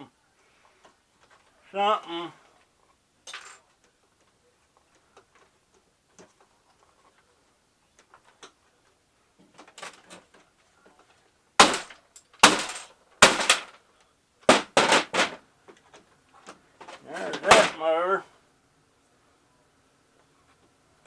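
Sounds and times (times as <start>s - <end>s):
light handling noises: 2.4s - 14.2s
loud sharp plastic cracks: 11.6s - 13.8s, 14.4s - 15.9s, 16.8s - 17.8s.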